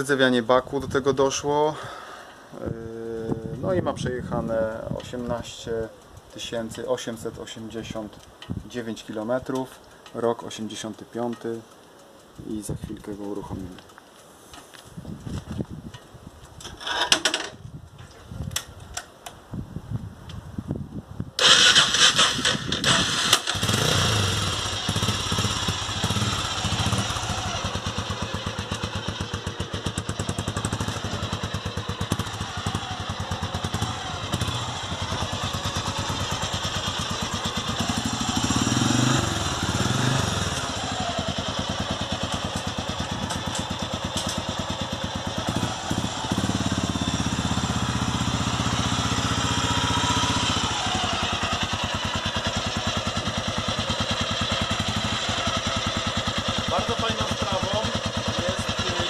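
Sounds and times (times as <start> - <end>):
motorcycle engine idling: 22.6 - 59.0.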